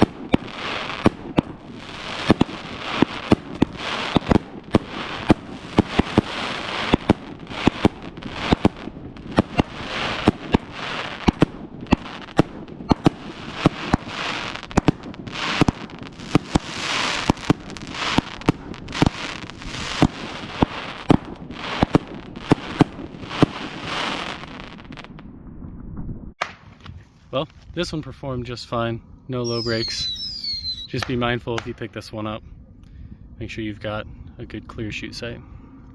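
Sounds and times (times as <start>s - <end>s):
firework cake bangs: 0.0s - 19.3s.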